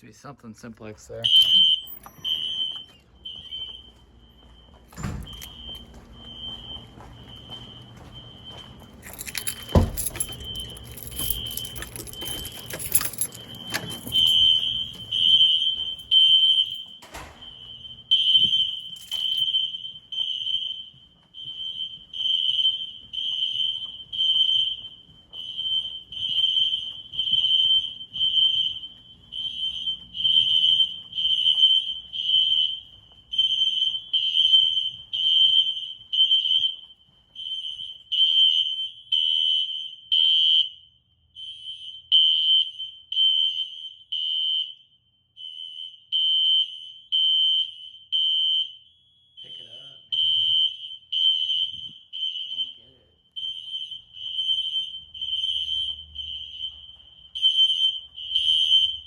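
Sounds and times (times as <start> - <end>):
fire alarm horns beeping: 0.0 - 59.0.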